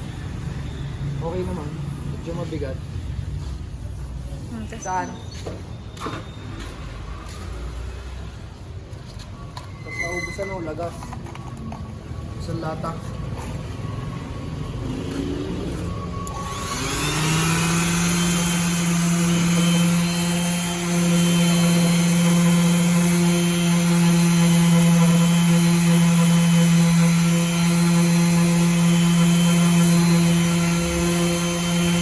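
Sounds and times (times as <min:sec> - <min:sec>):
orbital sander running: 0:16.3 - 0:32.0.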